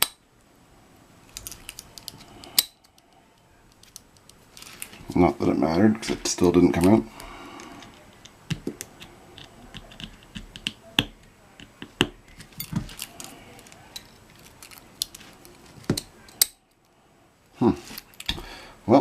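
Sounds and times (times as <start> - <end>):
padlock metal clicks and taps: 1.4 - 3.1.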